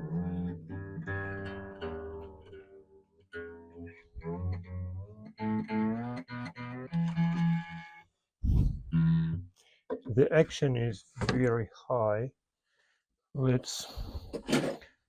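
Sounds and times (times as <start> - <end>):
acoustic guitar strings plucked: 0.0 - 8.0.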